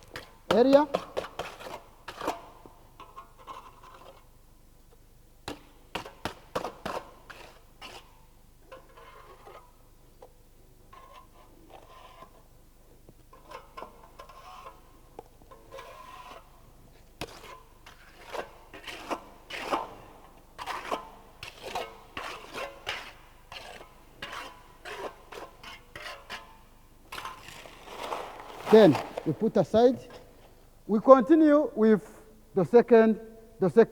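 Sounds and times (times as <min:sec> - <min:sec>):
steel float scraping concrete: 0:00.1 - 0:02.6, 0:03.4 - 0:04.3, 0:06.6 - 0:09.8, 0:10.9 - 0:12.4, 0:13.3 - 0:30.3.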